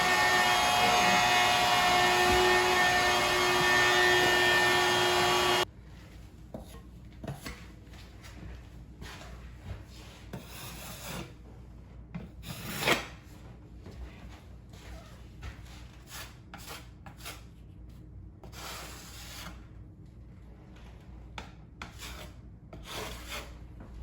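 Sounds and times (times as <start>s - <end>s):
electric motor whining: 0.0s - 5.6s.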